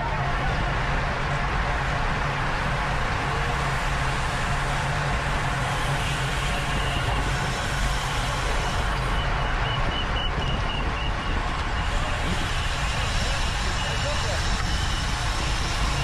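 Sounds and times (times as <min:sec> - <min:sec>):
wind rush: 0:09.8 - 0:16.0.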